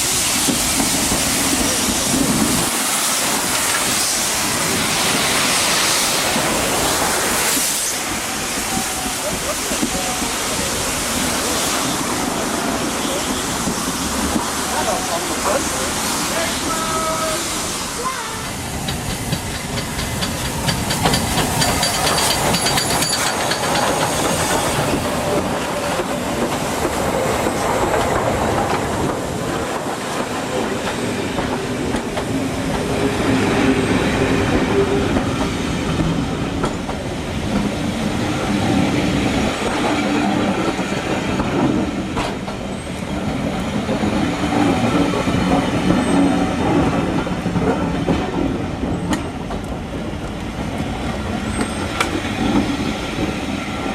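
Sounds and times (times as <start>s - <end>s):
train wheels clattering on track: 0.0s - 16.3s, 18.2s - 53.9s
wheels squealing on rail: 11.4s - 26.0s, 51.4s - 53.0s.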